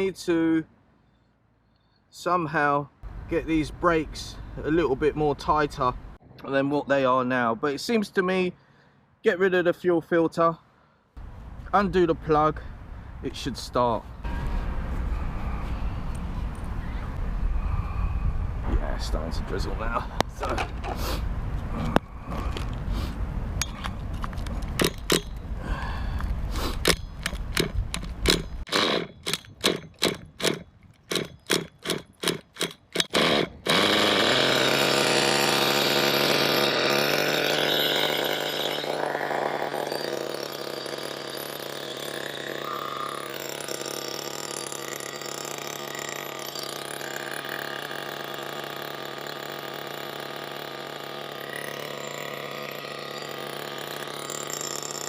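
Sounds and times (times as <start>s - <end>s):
small engine cranking: 26.7s - 55.0s
small engine idling: 33.0s - 55.0s.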